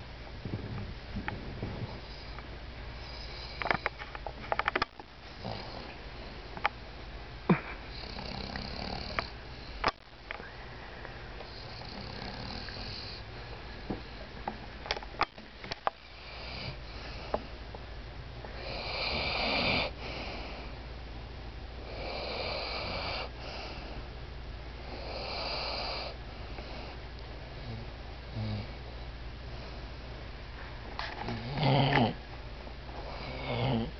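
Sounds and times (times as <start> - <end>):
dog snoring: 3.0 - 3.9, 5.4 - 6.4, 7.9 - 9.9, 11.4 - 13.2, 16.0 - 17.3, 18.6 - 20.6, 21.8 - 23.9, 24.8 - 27.0, 27.6 - 28.8, 31.2 - 32.2, 33.0 - 33.9.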